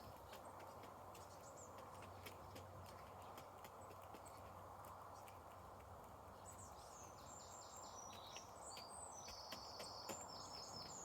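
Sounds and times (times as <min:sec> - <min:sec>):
birds pecking at feed: 0:00.0 - 0:11.0.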